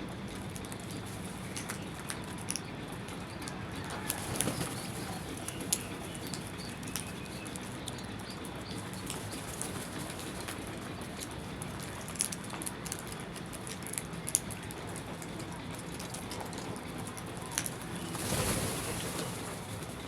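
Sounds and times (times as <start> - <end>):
birds pecking taps and clicks: 0.2 - 19.5
rushing wingbeats: 18.0 - 20.0.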